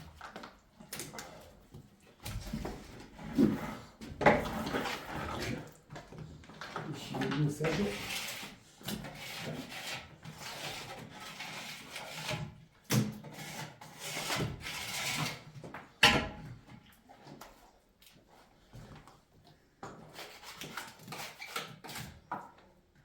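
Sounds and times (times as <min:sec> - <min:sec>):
rubbing and scraping: 0:02.4 - 0:05.8, 0:06.9 - 0:12.6.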